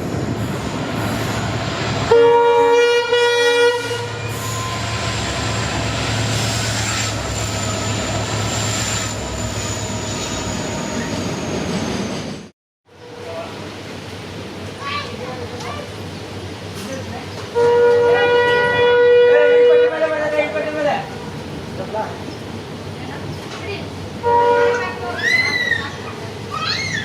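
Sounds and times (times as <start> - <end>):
locomotive horn honk: 2.1 - 4.3, 17.6 - 20.1, 24.2 - 25.0.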